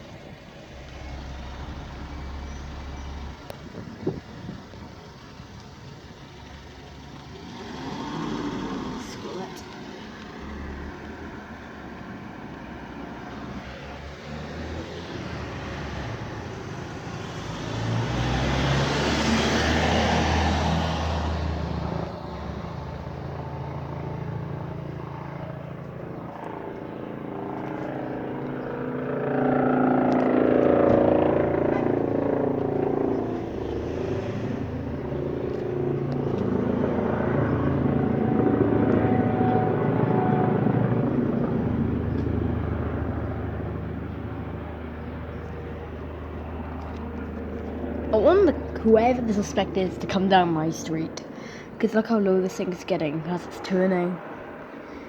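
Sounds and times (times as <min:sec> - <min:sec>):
helicopter drone: 0:00.0 - 0:55.0.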